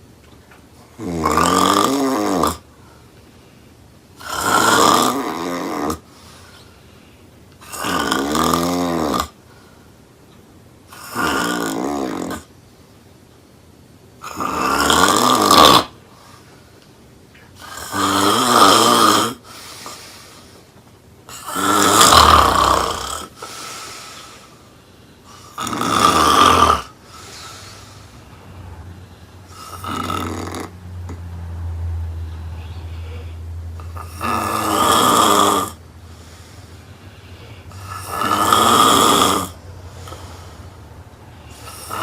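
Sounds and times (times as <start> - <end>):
loud snoring: 0.9 - 2.7, 4.2 - 6.1, 7.6 - 9.4, 10.9 - 12.5, 14.2 - 16.0, 17.6 - 19.5, 21.3 - 23.6, 25.2 - 27.9, 29.4 - 31.2, 32.6 - 36.4, 37.6 - 40.6, 41.5 - 42.0
quiet breaths: 2.6 - 4.4, 5.9 - 7.7, 9.3 - 11.1, 19.3 - 21.6, 22.7 - 25.8, 26.8 - 30.1, 30.7 - 34.3, 35.4 - 42.0.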